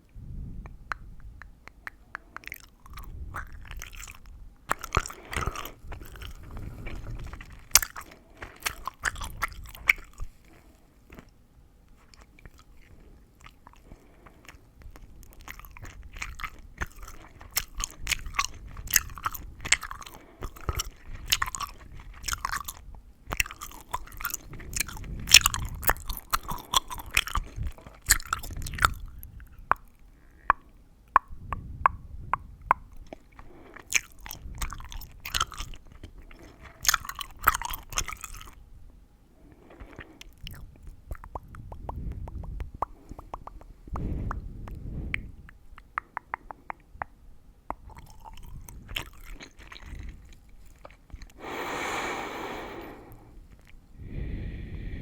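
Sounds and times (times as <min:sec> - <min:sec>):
gum chewing: 0:00.6 - 0:38.6, 0:39.4 - 0:53.9.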